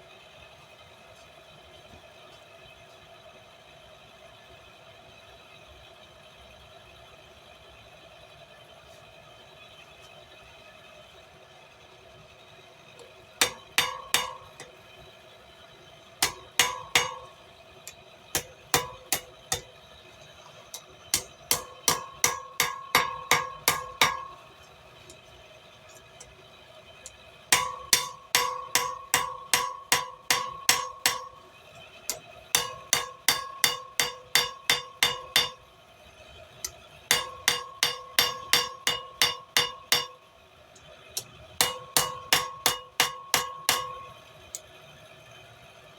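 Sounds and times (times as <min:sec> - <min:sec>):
hammer striking steel on anvil: 0:13.4 - 0:14.8, 0:16.2 - 0:19.8, 0:20.7 - 0:25.2, 0:27.5 - 0:31.5, 0:32.1 - 0:35.6, 0:36.6 - 0:40.2, 0:41.2 - 0:44.2.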